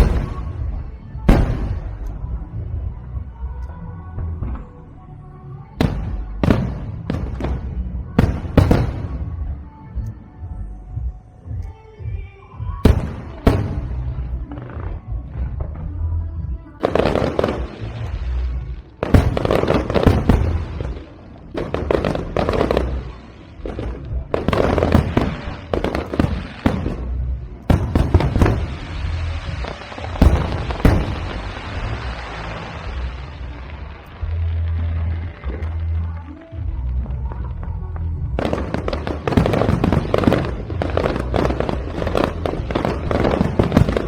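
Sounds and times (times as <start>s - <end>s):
firework crackling: 0.0s - 3.6s, 5.7s - 9.6s, 12.7s - 16.1s, 16.8s - 44.0s
firework shells bursting: 21.7s - 33.6s.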